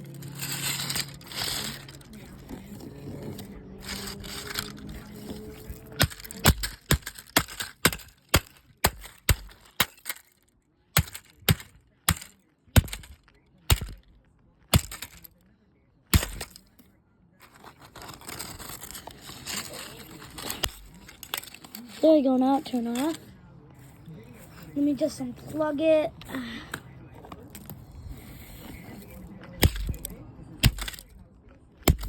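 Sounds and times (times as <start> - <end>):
hammer striking plastic clock: 11.0 - 14.0.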